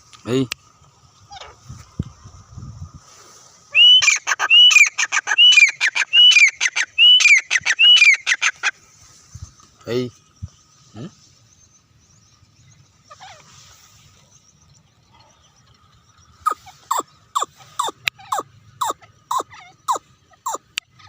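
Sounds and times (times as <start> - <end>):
quail calling: 3.7 - 8.8, 16.4 - 21.0.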